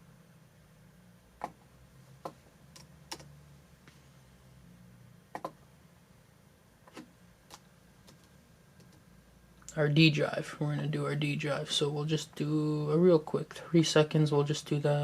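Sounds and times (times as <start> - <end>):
faint low hum: 0.0 - 15.0
laptop clicks: 5.3 - 5.6.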